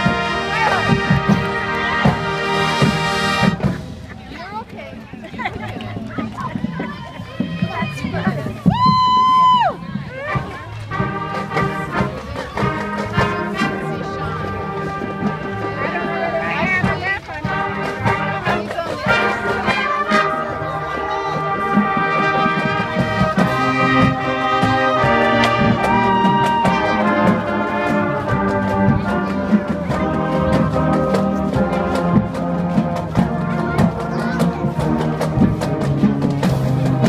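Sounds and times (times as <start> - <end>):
brass playing held chords: 0.0 - 3.7, 10.4 - 35.8
drumline percussion: 0.0 - 37.0.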